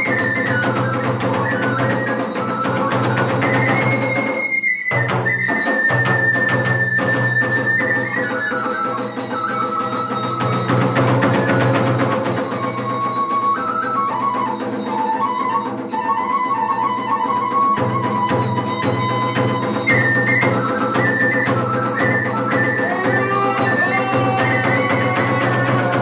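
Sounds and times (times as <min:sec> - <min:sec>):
drums beating: 0:00.0 - 0:16.0, 0:17.1 - 0:26.0
bamboo flute melody: 0:00.0 - 0:26.0.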